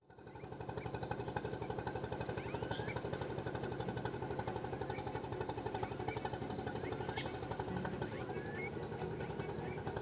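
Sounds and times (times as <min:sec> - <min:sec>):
small boat engine running: 0:00.0 - 0:10.0
bird chirps: 0:05.8 - 0:10.0.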